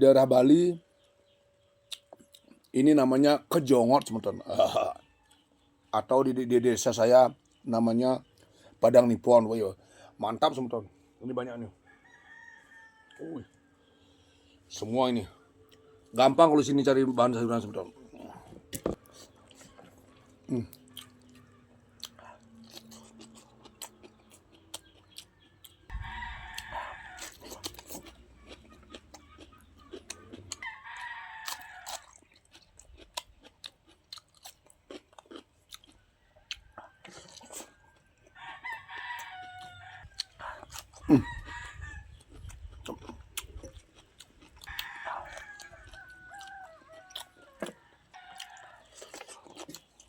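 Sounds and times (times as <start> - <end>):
chewing crunchy vegetables: 1.8 - 5.5, 14.6 - 50.0
rooster crowing: 11.8 - 13.9, 25.9 - 28.0, 30.5 - 32.1, 36.2 - 42.2, 44.6 - 49.0.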